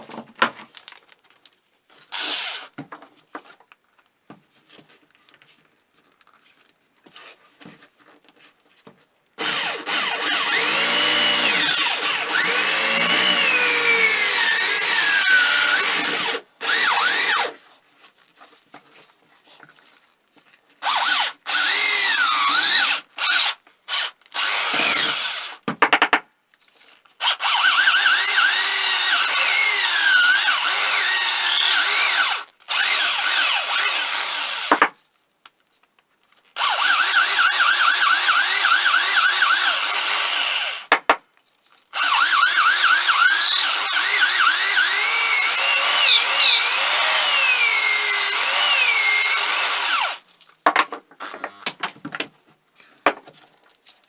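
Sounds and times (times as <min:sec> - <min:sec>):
handheld power tool running: 0:02.1 - 0:02.7, 0:09.4 - 0:17.6, 0:20.8 - 0:25.6, 0:27.2 - 0:34.9, 0:36.6 - 0:40.9, 0:42.0 - 0:50.2.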